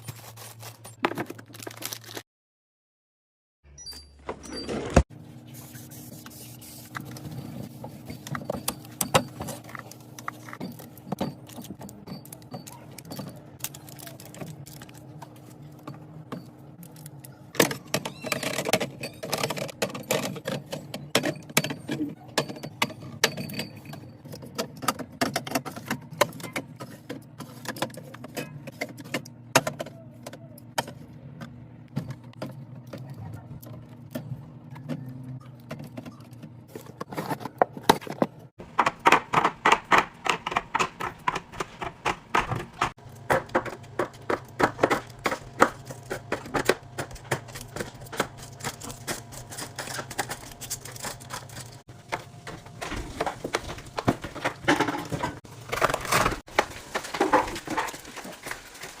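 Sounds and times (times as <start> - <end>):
fridge hum: 0.0 - 2.2, 3.7 - 59.0
containers clattering: 40.4 - 59.0.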